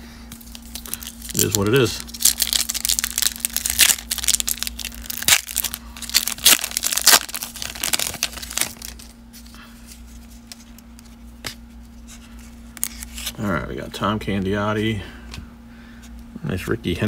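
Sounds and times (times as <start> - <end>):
wrapper crackling and crinkling: 0.4 - 11.1.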